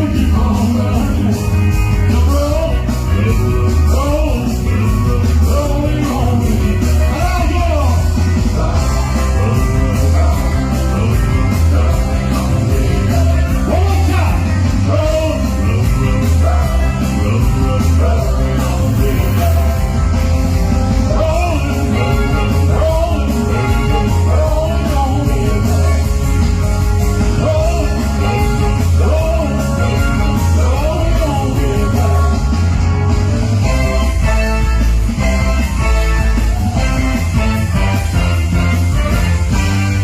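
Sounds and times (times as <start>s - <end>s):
person singing: 0.0s - 20.4s, 21.0s - 26.4s, 27.1s - 32.8s
rock and roll music: 0.0s - 40.0s.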